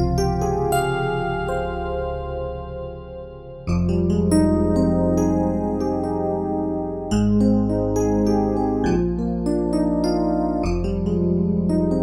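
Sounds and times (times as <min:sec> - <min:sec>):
low synth bass note: 0:00.0 - 0:04.1
synthesizer keyboard melody: 0:00.0 - 0:12.0.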